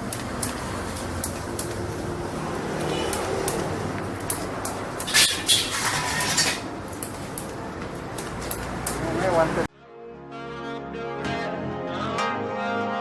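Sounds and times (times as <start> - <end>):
steady background noise: 0.0 - 9.7.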